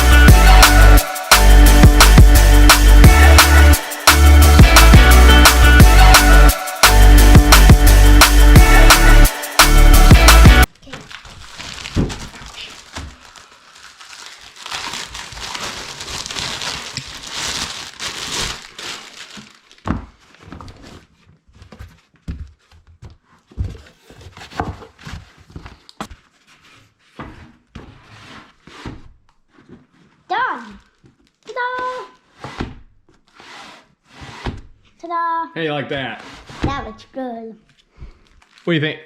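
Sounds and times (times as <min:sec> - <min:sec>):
packaging crinkling and rustling: 0:10.8 - 0:22.8, 0:30.8 - 0:31.5, 0:37.7 - 0:38.8.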